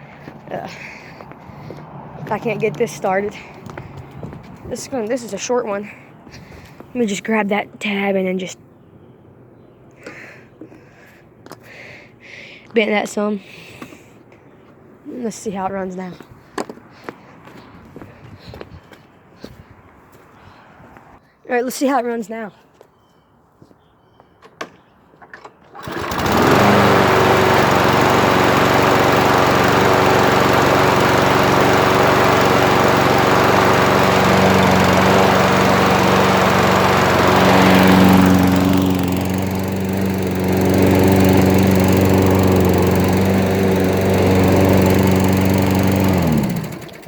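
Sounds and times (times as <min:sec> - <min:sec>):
lawn mower engine starting and running: 0:00.0 - 0:07.2, 0:25.4 - 0:47.0.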